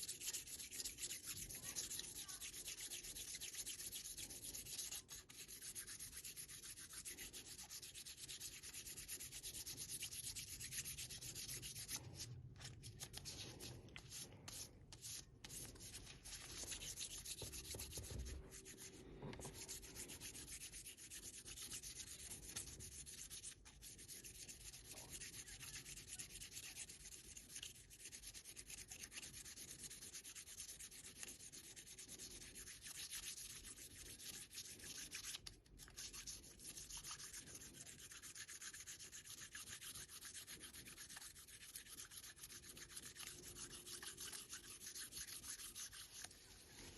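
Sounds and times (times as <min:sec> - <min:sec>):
sandpaper rubbing on wood: 0:00.0 - 0:46.9.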